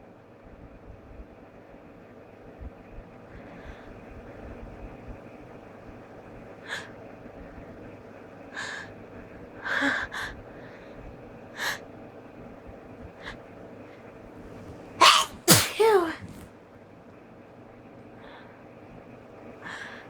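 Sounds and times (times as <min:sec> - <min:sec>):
person gasping in-breaths: 0:15.0 - 0:16.4.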